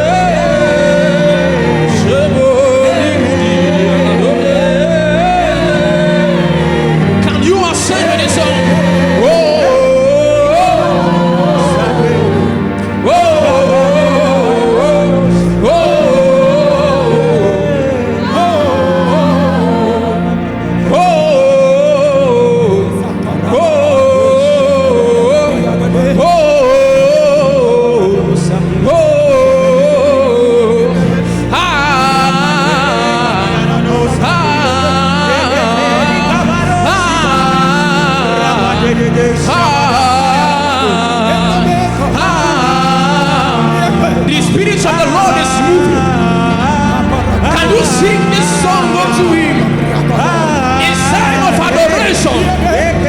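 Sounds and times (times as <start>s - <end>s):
person singing wordless chant: 0.0s - 53.0s
steady musical accompaniment: 0.0s - 53.0s.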